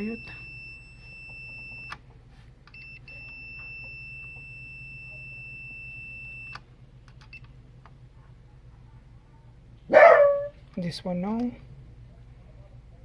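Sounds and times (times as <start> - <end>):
multimeter continuity beep: 0.0 - 2.0, 2.7 - 6.6
low steady hum: 0.0 - 13.0.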